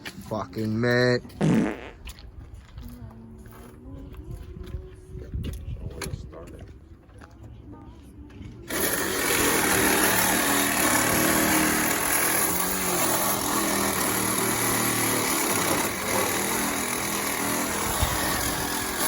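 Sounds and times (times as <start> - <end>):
power saw cutting metal: 8.7 - 19.0.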